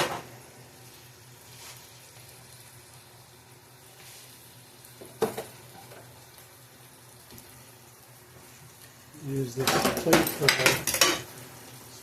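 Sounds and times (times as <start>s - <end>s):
onion sizzling in pan: 0.0s - 12.0s
kitchenware clink: 9.6s - 11.3s.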